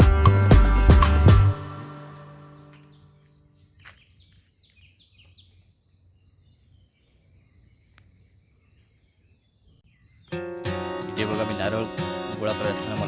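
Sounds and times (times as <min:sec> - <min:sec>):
faint bird chirps: 0:02.0 - 0:10.4.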